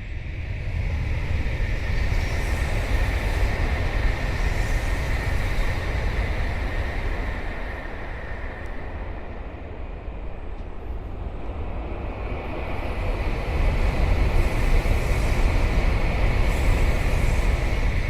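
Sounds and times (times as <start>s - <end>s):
train wheels rumbling on rails: 0.0s - 18.0s.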